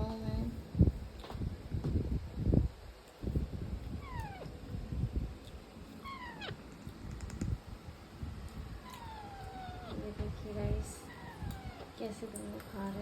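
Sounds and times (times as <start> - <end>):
parrot meow-like cries: 4.0 - 4.5, 6.0 - 6.6, 8.8 - 10.0, 11.0 - 12.0.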